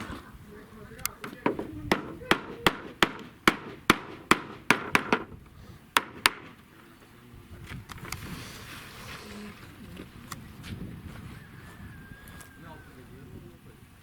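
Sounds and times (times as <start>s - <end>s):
hammer knocking: 1.2s - 5.3s, 6.0s - 6.6s.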